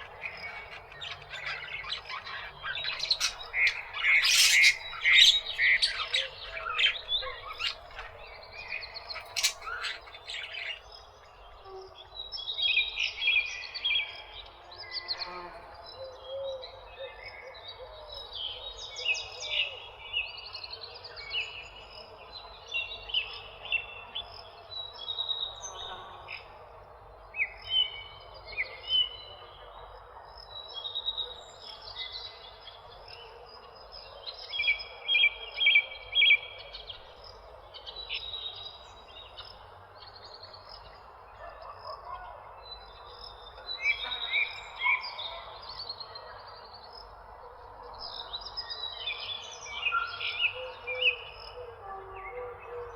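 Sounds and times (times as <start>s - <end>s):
parakeet squawks: 0.0s - 8.2s, 9.2s - 10.8s
parakeets chirping and chattering: 0.0s - 10.8s.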